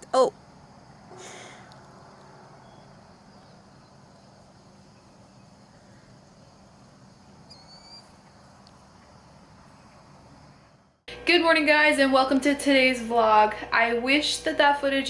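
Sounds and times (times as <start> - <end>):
low steady hum: 0.0 - 15.0
bird chirping: 1.2 - 11.0.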